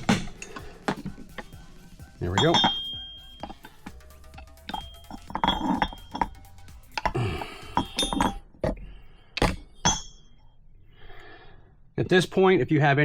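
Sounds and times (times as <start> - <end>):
handling noise: 0.0 - 8.8
metal tools clinking: 0.0 - 8.8, 9.4 - 10.5.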